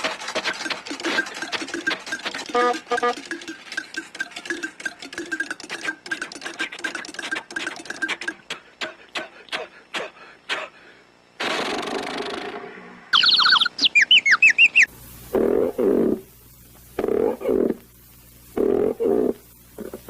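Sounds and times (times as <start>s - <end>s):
mechanical prop clicking and rattling: 0.0s - 8.2s.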